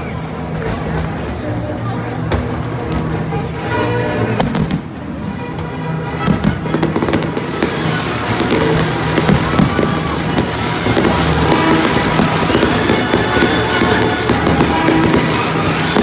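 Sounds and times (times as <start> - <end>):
fireworks bursting and crackling: 0.0 - 16.0
music playing: 0.0 - 16.0.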